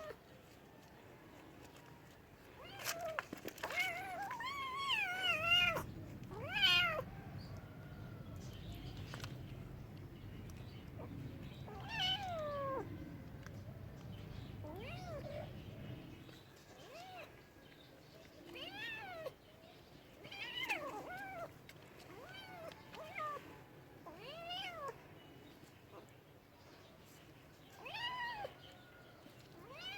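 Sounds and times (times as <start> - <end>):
cat meowing: 2.6 - 7.1, 11.7 - 12.9, 14.6 - 15.6, 20.2 - 21.5, 24.1 - 25.0, 27.8 - 28.6, 29.6 - 29.9.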